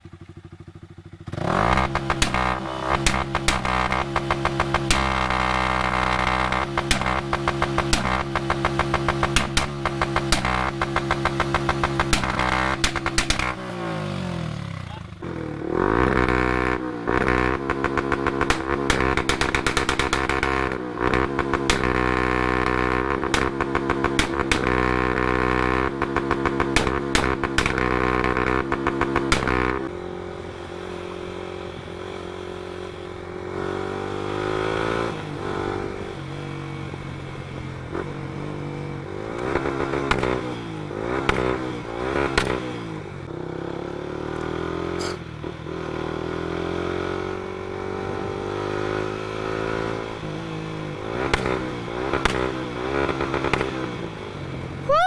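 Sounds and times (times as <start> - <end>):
motorcycle engine at high revs: 0.0 - 55.0
exhaust backfire pops: 1.7 - 5.4, 6.4 - 13.6, 17.8 - 22.0, 23.2 - 24.8, 26.0 - 29.8, 39.3 - 40.6, 41.2 - 42.8, 51.2 - 53.8.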